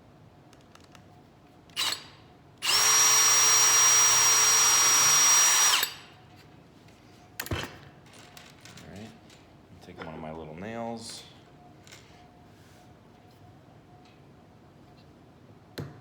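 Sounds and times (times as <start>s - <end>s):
power drill boring into wood: 1.8s - 2.0s, 2.6s - 6.0s.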